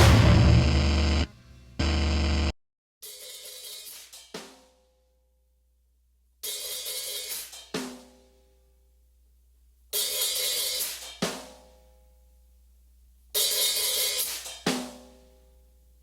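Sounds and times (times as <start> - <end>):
sharp hit with ringing notes: 0.0 - 1.3
cymbal and drum bursts: 0.0 - 1.8, 13.4 - 15.0.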